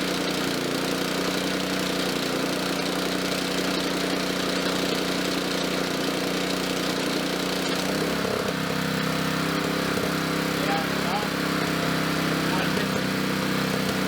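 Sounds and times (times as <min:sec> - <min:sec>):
air compressor engine running: 0:00.0 - 0:14.0.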